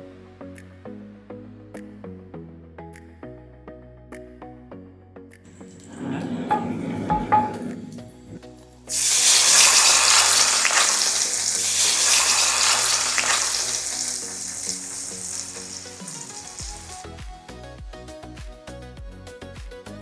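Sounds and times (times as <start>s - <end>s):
food sizzling in a hot pan: 5.6s - 6.7s, 8.9s - 17.0s.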